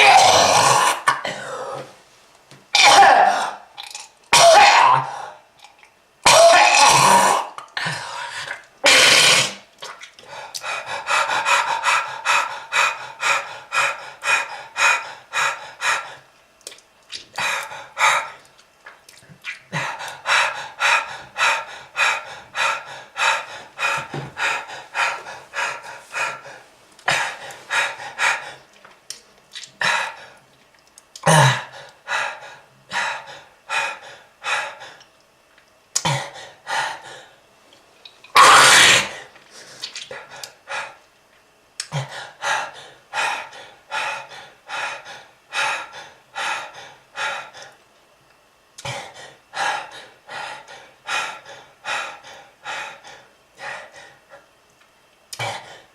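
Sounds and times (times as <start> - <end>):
person coughing harshly: 0.0 - 1.9, 2.8 - 3.6, 4.4 - 5.2, 6.3 - 7.5, 8.8 - 9.6.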